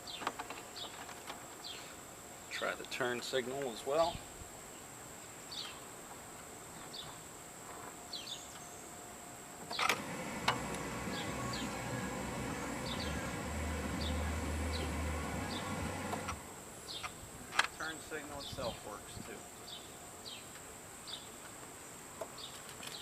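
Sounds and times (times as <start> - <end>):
birds chirping: 0.0 - 5.9, 9.7 - 21.5
car engine humming: 9.9 - 16.7.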